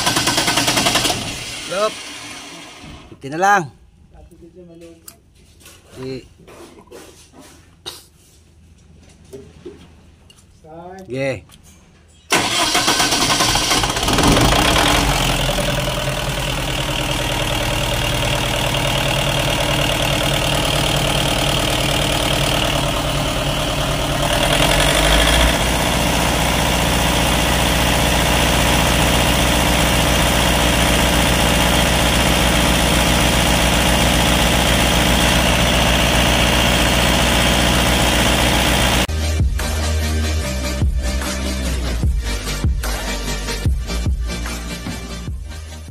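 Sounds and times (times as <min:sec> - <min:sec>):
diesel generator engine running: 0:00.0 - 0:03.2, 0:12.3 - 0:39.1.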